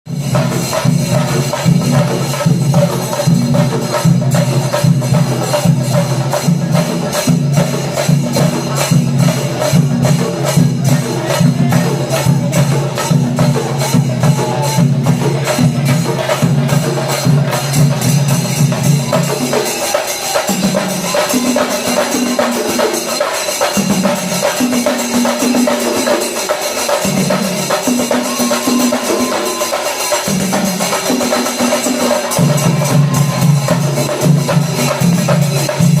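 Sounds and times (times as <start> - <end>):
drums beaten fast: 0.0 - 36.0
hand cymbals clashing: 0.1 - 36.0.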